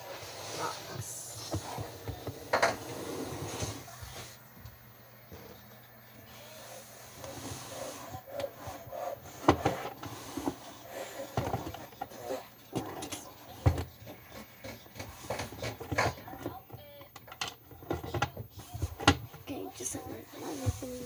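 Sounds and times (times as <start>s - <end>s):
objects knocking on a desk: 9.4s - 10.6s, 12.7s - 16.3s.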